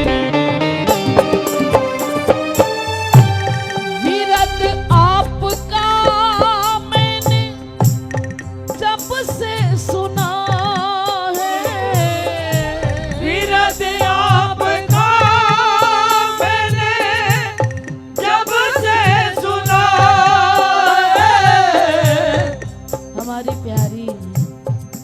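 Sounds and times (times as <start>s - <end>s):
percussion strokes: 0.0s - 25.0s
steady drone: 12.6s - 17.1s.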